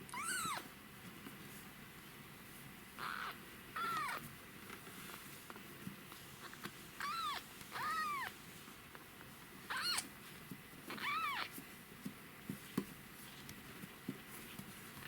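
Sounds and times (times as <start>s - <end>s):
kitten mewing: 0.1s - 0.7s, 3.0s - 4.2s, 7.0s - 8.3s, 9.7s - 10.1s, 10.9s - 11.5s.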